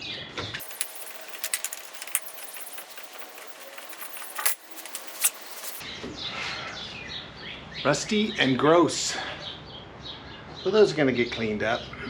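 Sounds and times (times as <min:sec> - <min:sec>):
lug nuts clinking and jingling: 0:00.6 - 0:05.8.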